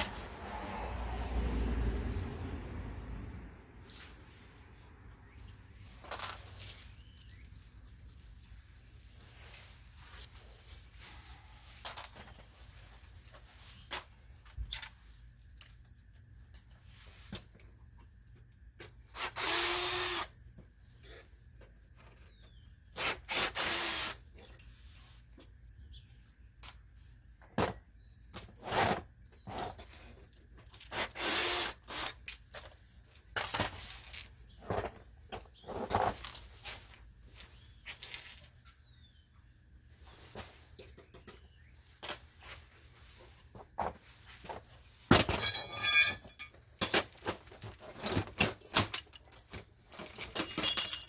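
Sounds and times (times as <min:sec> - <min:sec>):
power drill spinning: 0:19.2 - 0:20.3, 0:23.0 - 0:24.2.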